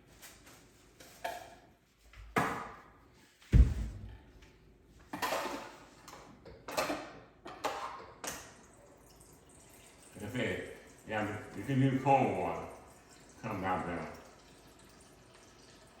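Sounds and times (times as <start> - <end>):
kitchen knocks and clunks: 2.2 - 4.3
deep thump: 3.5 - 4.2.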